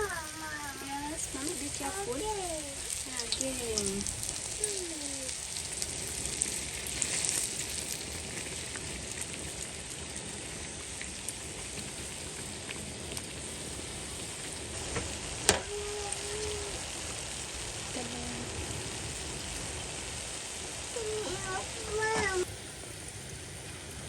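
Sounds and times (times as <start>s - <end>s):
person speaking: 0.0s - 5.3s
dough sizzling in oil: 0.0s - 24.0s.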